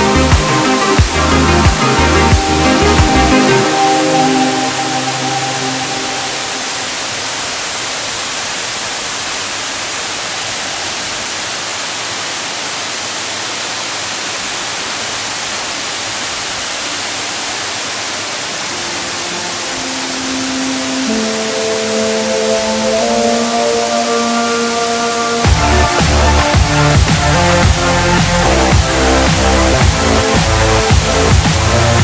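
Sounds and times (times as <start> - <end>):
background music: 0.0 - 7.2, 18.7 - 32.0
waterfall rushing: 0.0 - 32.0.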